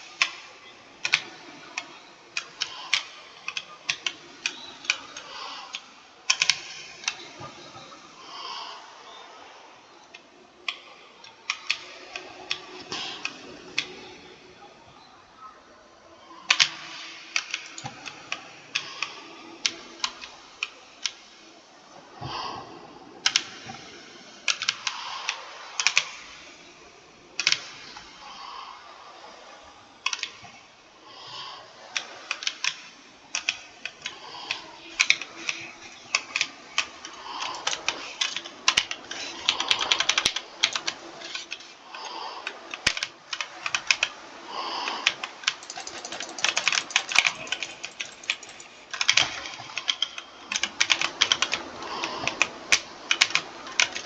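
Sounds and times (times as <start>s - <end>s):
typing on computer keyboard: 0.0s - 7.5s, 10.1s - 14.2s, 16.5s - 21.2s, 23.2s - 23.9s, 24.5s - 26.3s, 27.4s - 28.0s, 30.1s - 30.5s, 31.3s - 54.0s.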